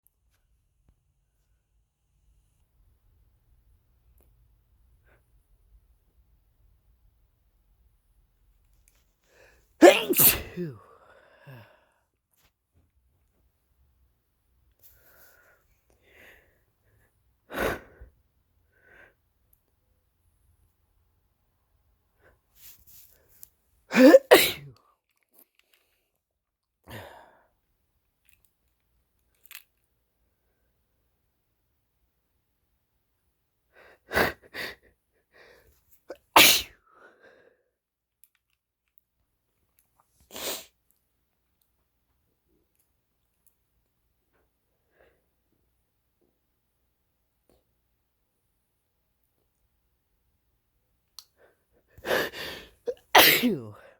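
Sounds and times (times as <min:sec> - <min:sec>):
person sneezing: 0:09.8 - 0:11.0, 0:23.9 - 0:24.7, 0:36.1 - 0:36.7, 0:40.3 - 0:40.7, 0:52.1 - 0:53.9.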